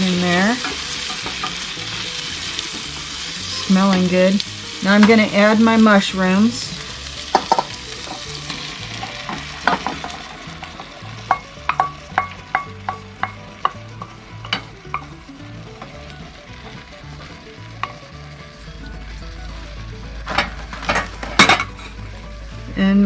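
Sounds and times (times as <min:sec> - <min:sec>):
vegetables sizzling in butter: 0:00.0 - 0:23.0
utensil tapping against pan: 0:07.3 - 0:10.2, 0:11.2 - 0:15.9, 0:17.8 - 0:18.1.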